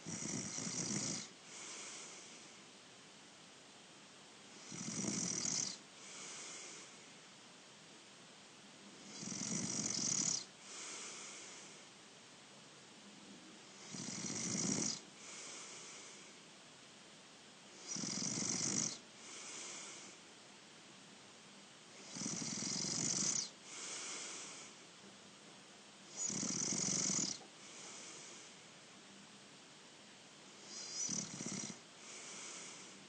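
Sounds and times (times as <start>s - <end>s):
person snoring: 0.0s - 2.5s, 4.6s - 6.9s, 9.0s - 11.8s, 13.8s - 16.4s, 17.8s - 20.2s, 22.0s - 24.8s, 26.1s - 28.5s, 30.6s - 33.0s
soft breath: 1.4s - 2.7s, 5.6s - 7.2s, 10.3s - 12.0s, 15.1s - 16.5s, 18.9s - 20.3s, 23.3s - 24.9s, 26.9s - 28.9s, 30.6s - 33.0s.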